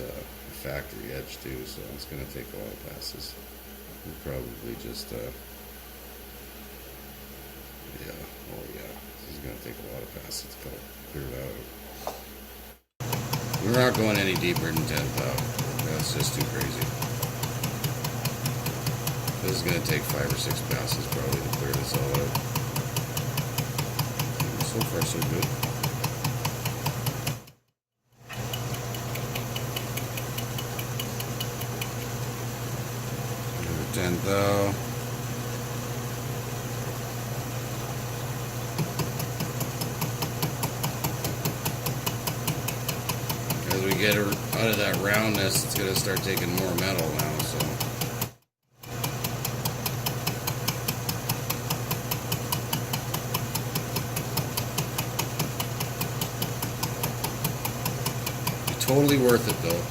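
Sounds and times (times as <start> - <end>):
lathe motor hum: 13.0 - 27.5, 37.8 - 59.9
fast regular ticking: 13.0 - 27.6, 28.4 - 32.2, 38.8 - 59.9.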